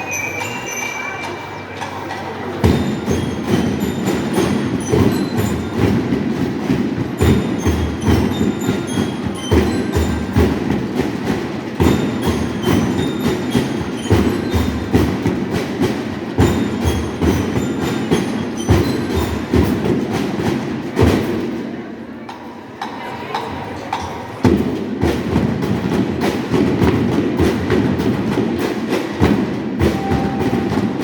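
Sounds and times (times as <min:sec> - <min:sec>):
bell-like lyre notes: 0:00.0 - 0:01.8, 0:30.0 - 0:31.0
marching band playing: 0:02.6 - 0:21.4, 0:29.3 - 0:31.0
drums beating march rhythm: 0:02.6 - 0:21.8, 0:24.5 - 0:31.0.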